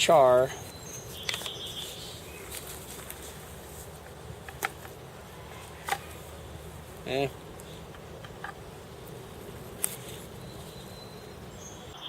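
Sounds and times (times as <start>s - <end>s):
faint outdoor background: 0.0s - 12.0s.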